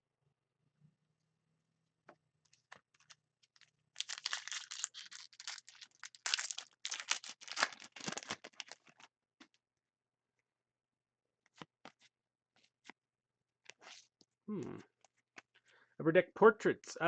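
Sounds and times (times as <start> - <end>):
wrapper tearing and crinkling: 3.0 - 9.1.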